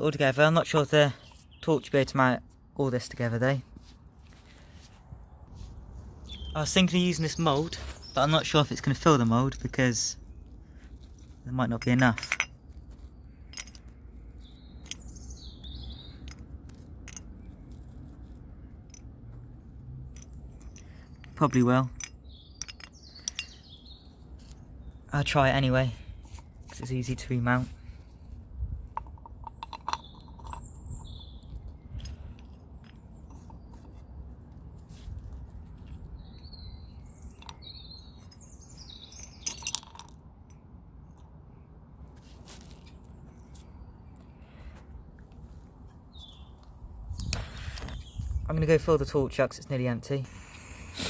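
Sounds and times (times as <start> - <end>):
small birds chirping: 0.0 - 51.0
sharp metallic clinks: 13.4 - 13.9, 20.0 - 24.6, 37.1 - 41.3.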